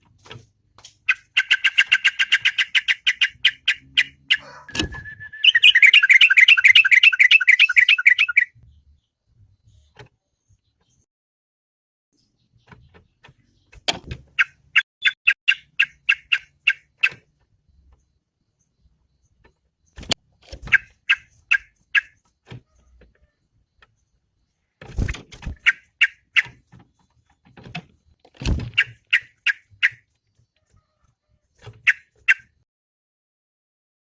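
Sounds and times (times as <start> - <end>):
bird calling sharp repeated notes: 1.0 - 8.6, 14.3 - 17.3, 19.9 - 23.4, 25.0 - 26.8, 28.6 - 32.6.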